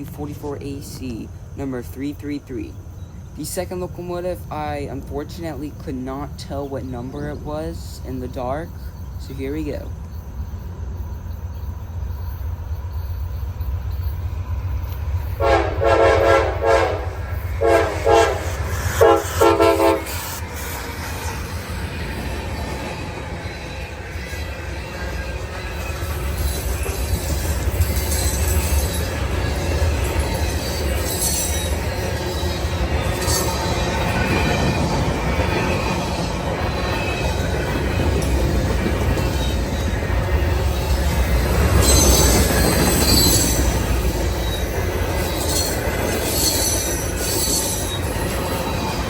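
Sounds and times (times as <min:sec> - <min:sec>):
train wheels rumbling on rail: 0:00.0 - 0:49.0
locomotive air horn blasts: 0:15.4 - 0:20.3
wheel squeal: 0:40.7 - 0:49.0.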